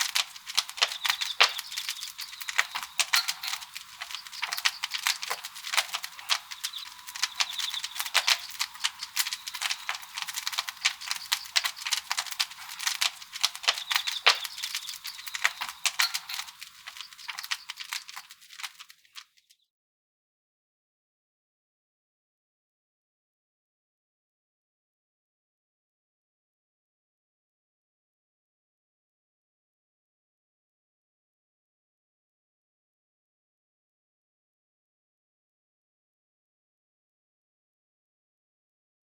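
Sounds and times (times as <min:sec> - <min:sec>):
wood fire crackling: 0:00.0 - 0:19.4.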